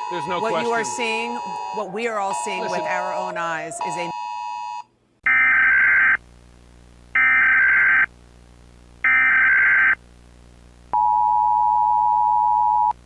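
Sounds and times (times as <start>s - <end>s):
digital data tone bursts: 5.3s - 6.2s, 7.2s - 8.1s, 9.0s - 10.0s
steady attention signal tone: 5.3s - 6.2s, 7.1s - 8.1s, 9.0s - 10.0s.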